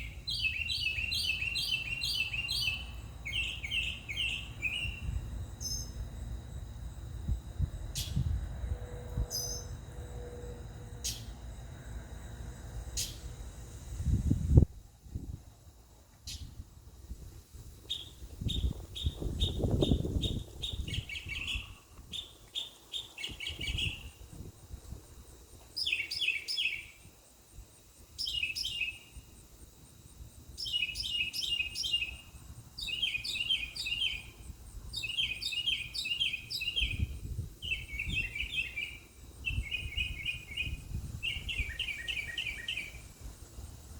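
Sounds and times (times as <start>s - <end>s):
mockingbird singing: 0.0s - 5.0s, 17.9s - 24.0s, 32.8s - 34.3s, 35.0s - 43.0s.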